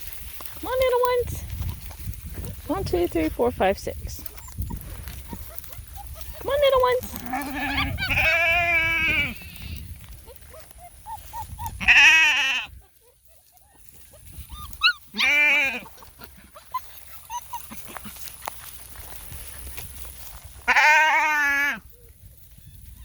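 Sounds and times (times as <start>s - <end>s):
sheep bleating: 7.0s - 9.7s, 11.8s - 12.8s, 15.1s - 15.9s, 20.7s - 21.8s.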